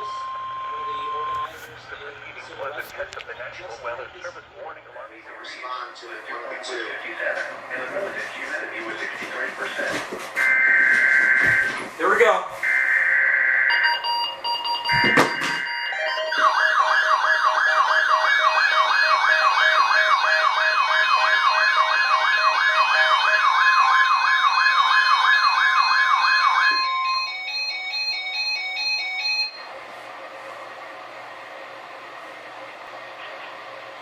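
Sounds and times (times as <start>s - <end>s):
faint beeping: 0.0s - 4.5s
siren-like alert tone: 10.4s - 11.9s, 12.6s - 29.7s.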